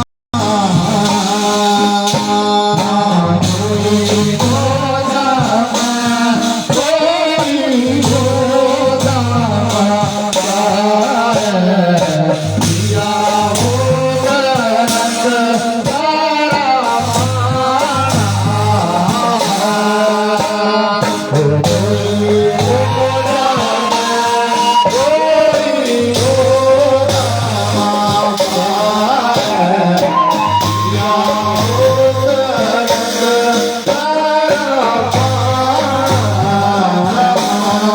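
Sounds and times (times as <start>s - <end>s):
instrumental accompaniment with low beat: 0.0s - 37.9s
person singing: 0.0s - 37.9s.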